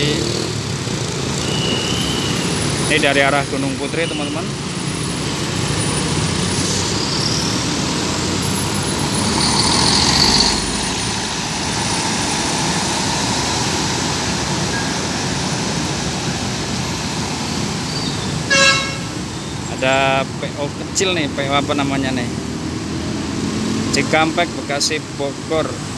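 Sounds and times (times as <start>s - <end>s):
road traffic passing: 0.0s - 25.9s
vehicle passing close: 4.6s - 20.0s.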